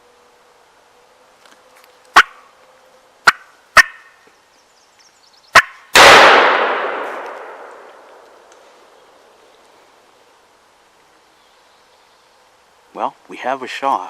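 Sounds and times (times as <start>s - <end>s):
turkey alarm putts: 2.2s - 2.4s, 3.2s - 4.2s
shotgun shot echoing: 6.0s - 8.2s.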